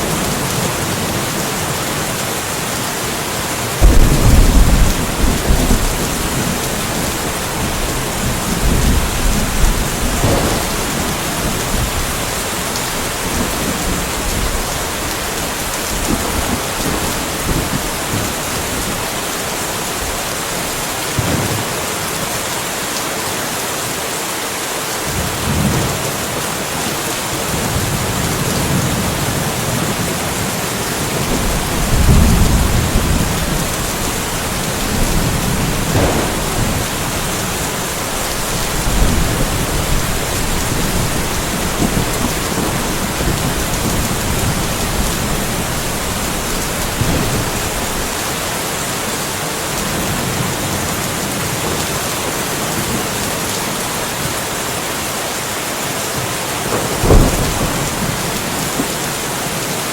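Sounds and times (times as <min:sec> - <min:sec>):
steady rain: 0:00.0 - 0:59.9
low rolls of thunder: 0:03.8 - 0:19.3, 0:31.1 - 0:48.2, 0:56.7 - 0:58.9.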